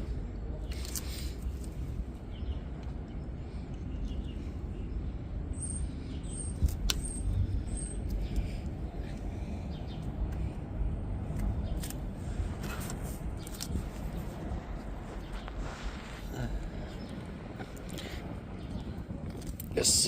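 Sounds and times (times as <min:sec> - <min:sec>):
steady low rumble: 0:00.0 - 0:20.0
bird chirping: 0:02.2 - 0:10.6.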